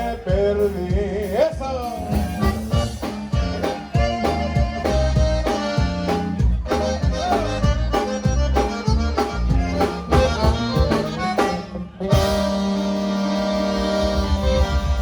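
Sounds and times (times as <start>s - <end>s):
bass and drum beat: 0.0s - 15.0s
button accordion melody: 0.0s - 15.0s.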